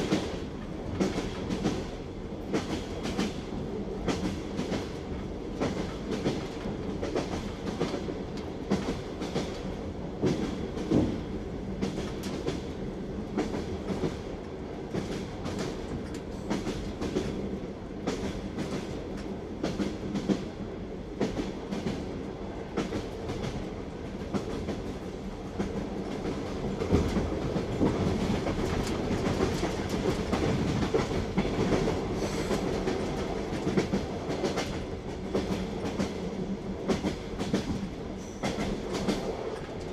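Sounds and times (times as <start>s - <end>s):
train wheels clattering: 22.8s - 39.9s.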